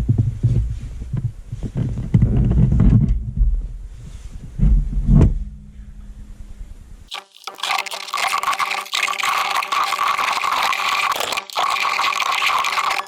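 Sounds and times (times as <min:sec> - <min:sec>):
low rumbling knocks: 0:00.0 - 0:03.8, 0:04.4 - 0:07.0
faint steady hum: 0:03.1 - 0:07.8.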